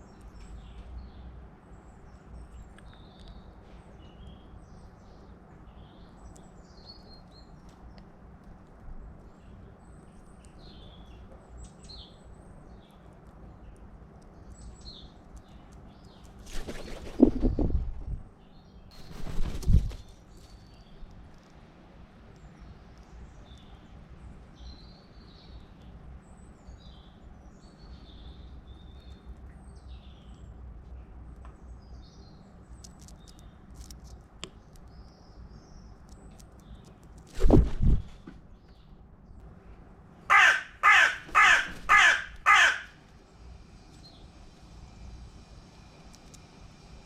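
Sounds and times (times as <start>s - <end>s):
small birds chirping: 0.0s - 47.0s
crow cawing: 40.3s - 43.0s.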